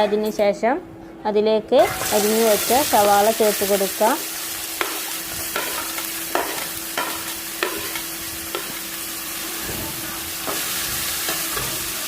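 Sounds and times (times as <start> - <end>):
onions sizzling in hot oil: 1.8 - 12.0
spatula knocking against pan: 4.8 - 8.8.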